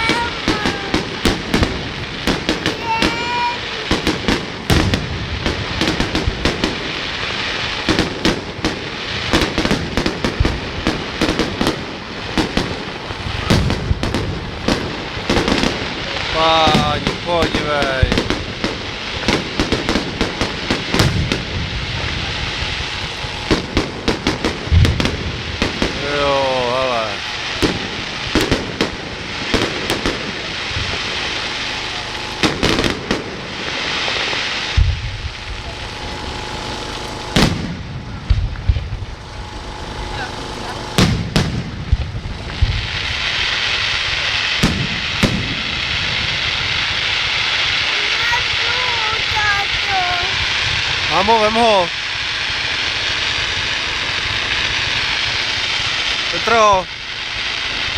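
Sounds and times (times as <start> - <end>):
fireworks booms: 0.0 - 57.9
fireworks cracking and popping: 0.0 - 57.9
dull firework thump: 21.0 - 21.7.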